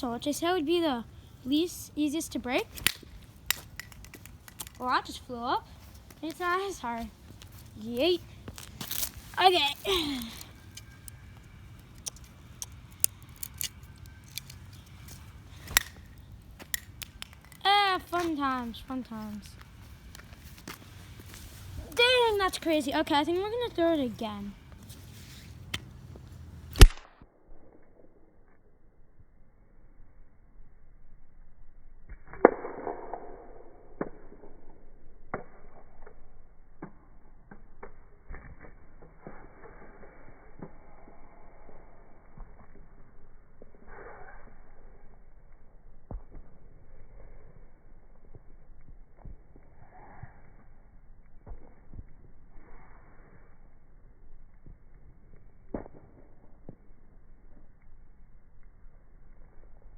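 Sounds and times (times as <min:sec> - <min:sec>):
plastic cube cracking on ground: 0:02.7 - 0:04.8, 0:08.5 - 0:11.2, 0:11.8 - 0:17.7.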